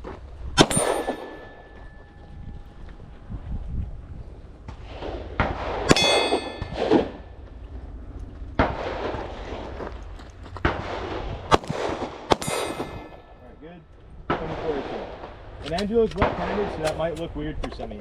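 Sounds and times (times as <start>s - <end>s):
pistol shots: 0.6s - 1.8s, 5.0s - 7.3s, 10.6s - 13.4s
metallic ringing clang: 0.6s - 3.1s, 5.9s - 7.4s, 12.3s - 13.6s.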